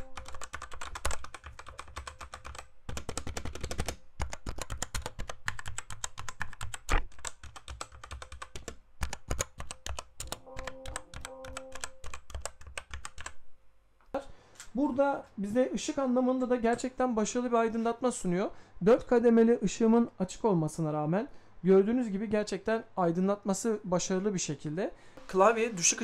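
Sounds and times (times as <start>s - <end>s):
fast typing on mechanical keyboard: 0.0s - 13.4s.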